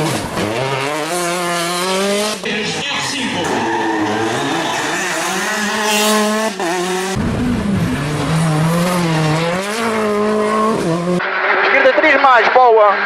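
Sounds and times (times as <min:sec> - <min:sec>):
rally car engine revving: 0:00.0 - 0:13.0.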